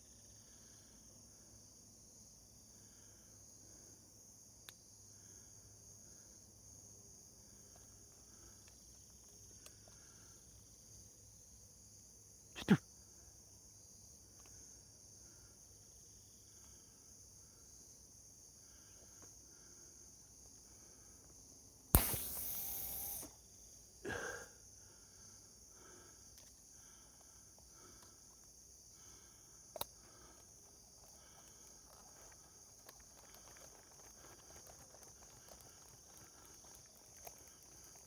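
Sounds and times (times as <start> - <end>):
crickets chirping: 0.0 - 38.0
sharp click: 22.0 - 23.4.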